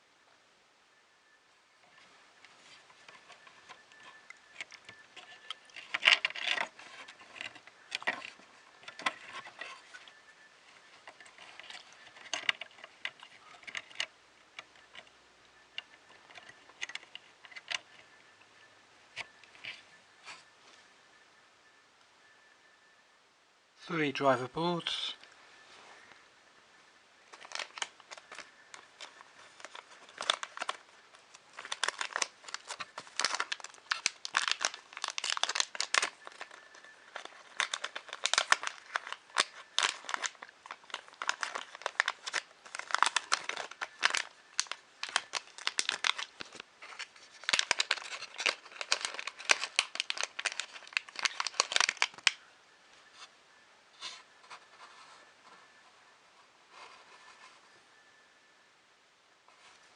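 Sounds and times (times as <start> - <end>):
plastic packaging crinkling and tearing: 2.6 - 14.1, 27.3 - 52.4.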